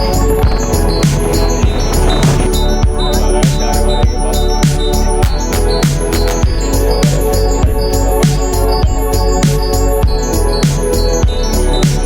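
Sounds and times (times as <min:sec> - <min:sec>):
deep sliding bass note: 0:00.0 - 0:07.0
held synth notes: 0:00.0 - 0:10.6
electronic beat: 0:00.0 - 0:12.0.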